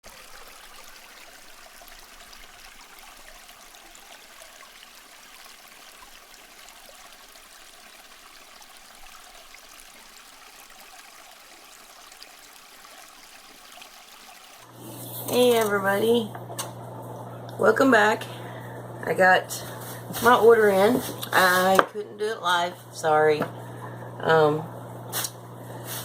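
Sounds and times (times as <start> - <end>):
aquarium water trickling: 0.0 - 16.2.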